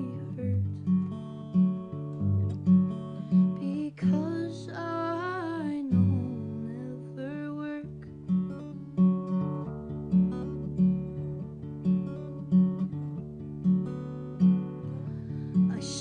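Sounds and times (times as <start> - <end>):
person singing: 0.0 - 0.7, 3.4 - 8.0, 15.7 - 16.0
acoustic guitar strumming: 0.0 - 16.0.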